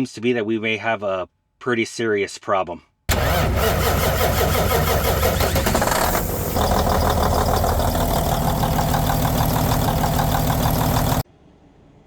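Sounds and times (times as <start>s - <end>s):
diesel truck engine running: 3.1s - 11.2s.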